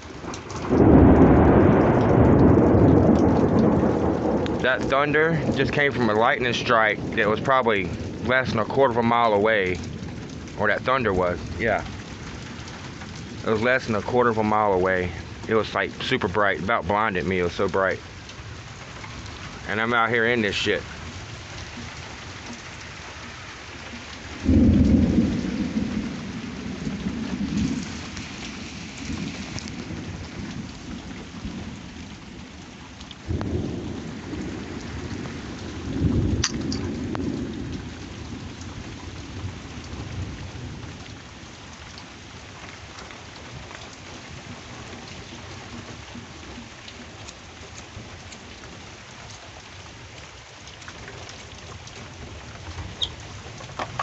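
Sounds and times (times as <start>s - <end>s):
steady rain: 0.0s - 54.0s
rolling thunder: 0.2s - 22.8s, 24.0s - 32.4s, 33.2s - 41.0s.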